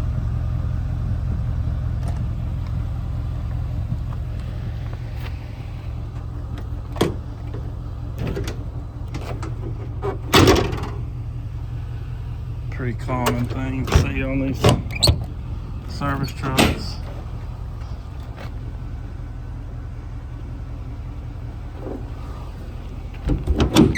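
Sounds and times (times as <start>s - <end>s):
car engine idling: 0.0s - 23.9s.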